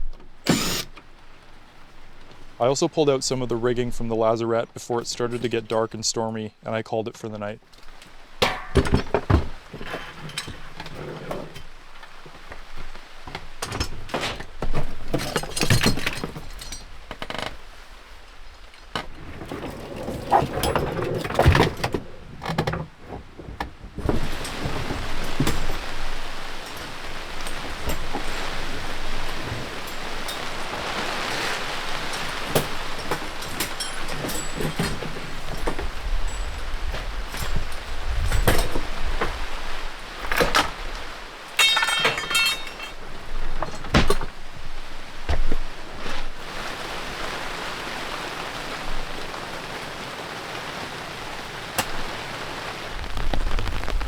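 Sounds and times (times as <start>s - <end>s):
steady rain falling: 0.1s - 54.0s
short buzzing rattle: 0.4s - 1.2s.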